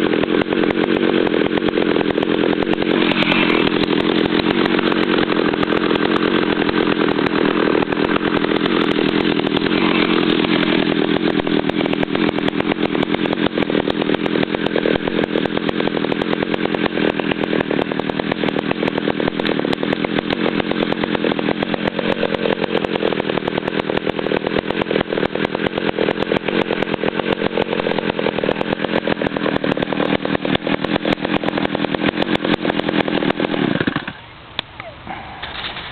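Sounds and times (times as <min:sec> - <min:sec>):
chainsaw engine running: 0:00.0 - 0:35.9.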